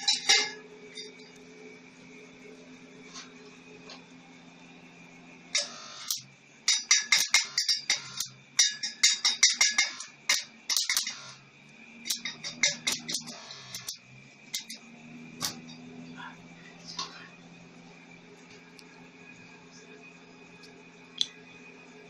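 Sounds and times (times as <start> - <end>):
welder machine hum: 0.0 - 22.0
welding arc crackling: 5.5 - 15.7.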